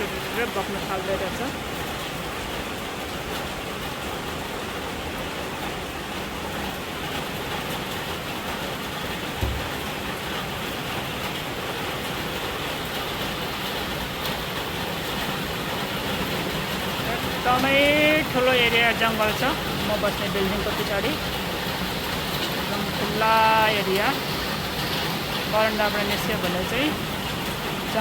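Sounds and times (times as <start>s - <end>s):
steady rain falling: 0.0s - 28.0s
low thump: 9.4s - 10.0s.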